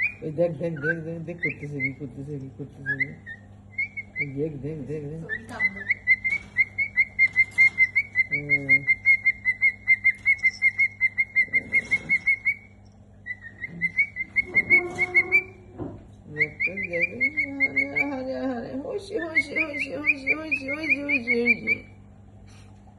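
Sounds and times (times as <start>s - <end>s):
cockatiel chirping: 2.8s - 4.4s, 5.3s - 15.6s, 16.4s - 18.3s, 19.2s - 21.9s.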